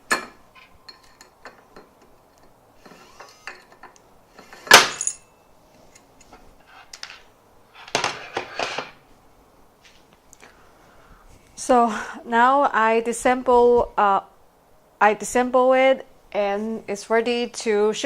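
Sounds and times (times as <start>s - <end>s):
tools and metal parts clinking: 0.0s - 9.0s
metal parts clattering: 2.8s - 5.3s.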